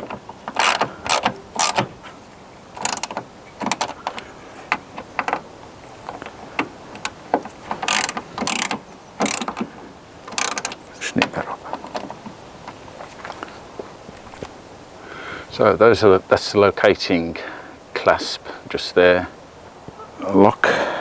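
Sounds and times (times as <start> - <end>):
hand ratchet clicking: 0.0 - 1.9, 2.8 - 5.4, 6.1 - 9.7, 10.3 - 10.8.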